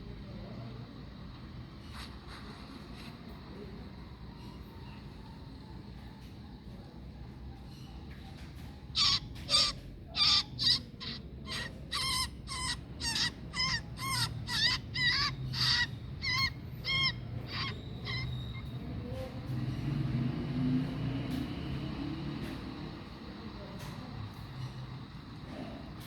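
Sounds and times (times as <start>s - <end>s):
bird harsh calls: 8.8s - 19.1s.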